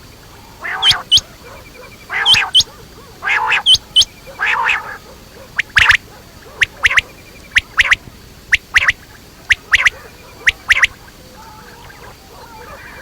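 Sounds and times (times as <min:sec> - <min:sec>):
quail three-note call: 0:00.6 - 0:01.3, 0:02.1 - 0:06.0, 0:06.6 - 0:11.0.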